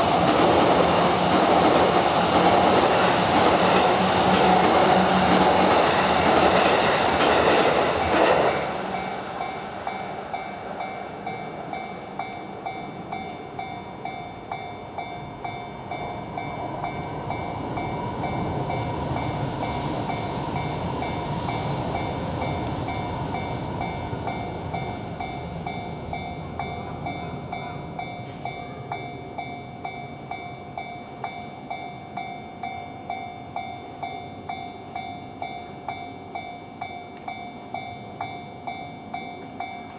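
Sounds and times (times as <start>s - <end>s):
train running over crossing: 0.0s - 39.9s
electronic crossing warning bell: 9.0s - 39.9s
broad rushing noise: 16.1s - 26.7s.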